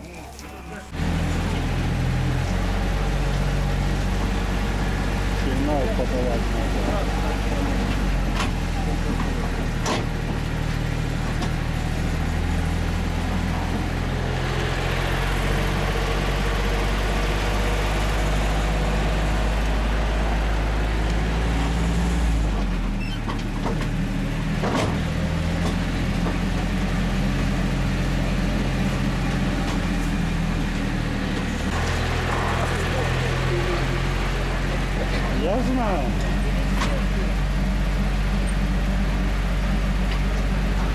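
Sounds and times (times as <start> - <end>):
road noise: 0.0 - 40.9
vehicle engine running: 0.0 - 40.9.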